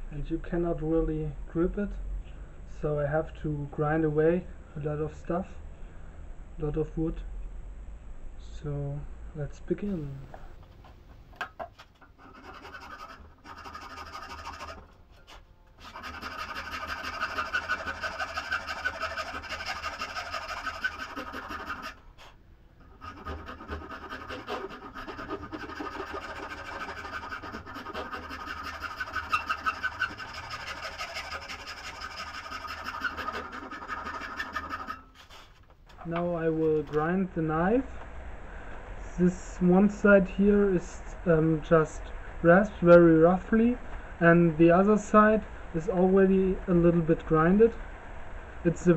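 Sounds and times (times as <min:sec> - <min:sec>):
rasp scraping wood: 0:11.4 - 0:37.1.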